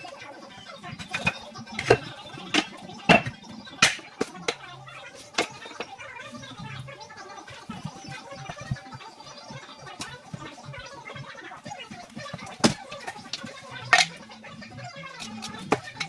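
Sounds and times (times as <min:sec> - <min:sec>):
floorboards knocking together: 0:00.9 - 0:04.7, 0:11.6 - 0:14.2.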